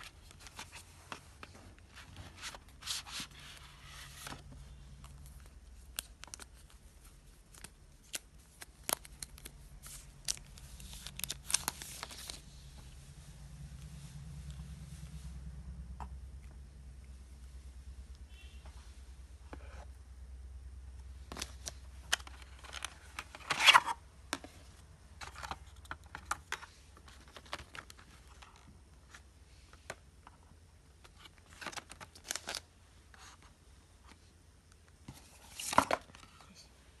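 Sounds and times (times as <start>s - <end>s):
packaging clicks and rustles: 0.0s - 12.5s, 21.3s - 24.5s, 25.2s - 29.2s, 31.0s - 32.7s.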